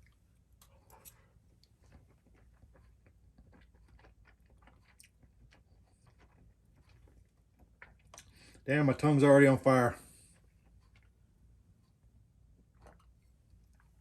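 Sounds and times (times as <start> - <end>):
mouth chewing wet clicks: 0.0 - 8.6.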